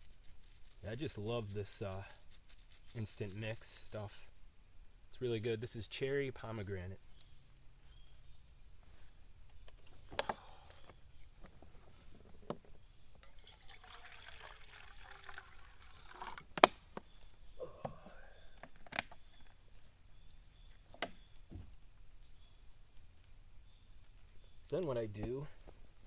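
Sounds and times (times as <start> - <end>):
liquid pouring into container: 13.2 - 16.5.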